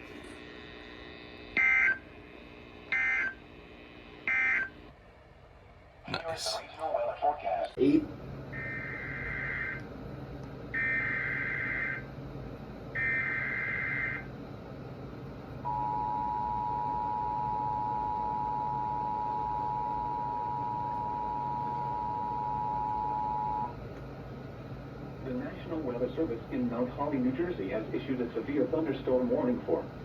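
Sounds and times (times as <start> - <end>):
two-tone attention signal: 15.7 - 23.7.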